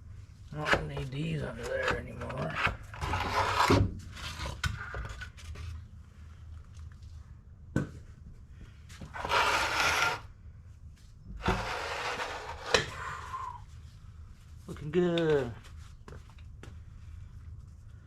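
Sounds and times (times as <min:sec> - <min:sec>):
long scrapes: 0:09.1 - 0:10.3, 0:11.4 - 0:13.6.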